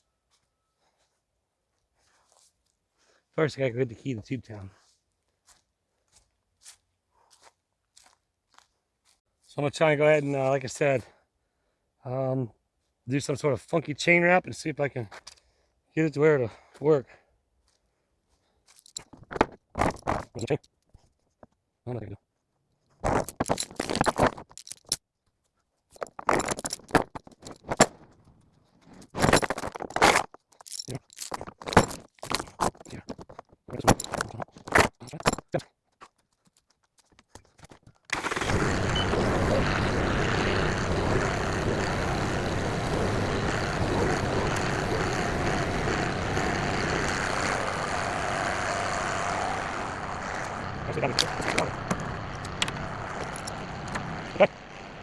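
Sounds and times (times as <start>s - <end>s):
metal chain clinking: 18.7s - 19.2s, 19.8s - 20.7s, 23.0s - 25.0s, 26.0s - 28.1s, 29.2s - 35.5s, 50.2s - 54.8s
steady noise: 38.2s - 55.0s.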